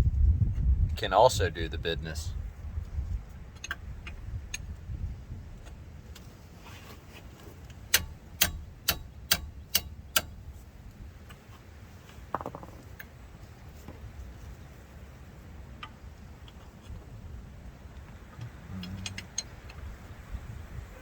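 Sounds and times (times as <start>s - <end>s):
light metallic ticks: 7.9s - 10.3s
sledgehammer striking a wrench: 7.9s - 10.4s.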